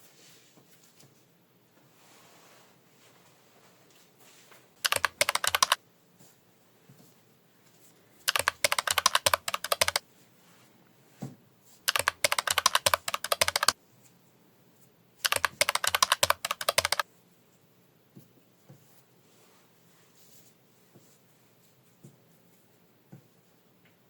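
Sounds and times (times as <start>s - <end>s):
rapid clicking taps: 4.8s - 5.8s, 8.3s - 10.0s, 11.9s - 13.8s, 15.2s - 17.0s.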